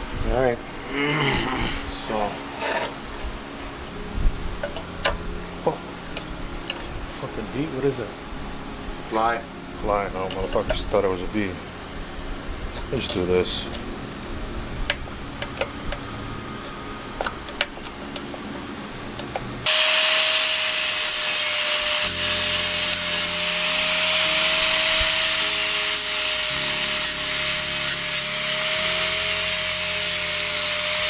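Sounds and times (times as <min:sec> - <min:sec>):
power tool cutting sheet metal: 0:19.6 - 0:31.0.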